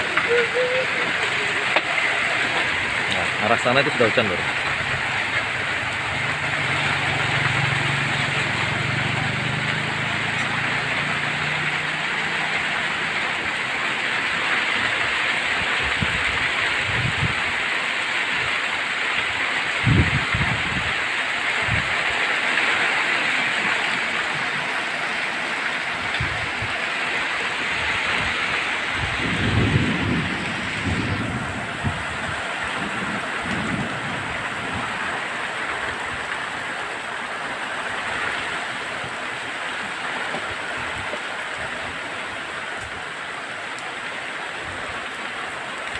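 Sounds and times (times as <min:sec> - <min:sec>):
heavy rain falling: 0:00.0 - 0:45.9
low thunder rumbles: 0:28.9 - 0:35.1.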